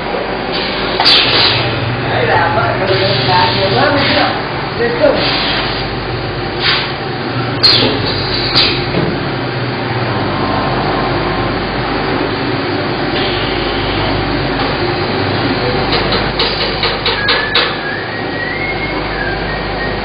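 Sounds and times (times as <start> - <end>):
machine shop din: 0.0 - 20.0
sharp metallic knocks: 15.9 - 17.8.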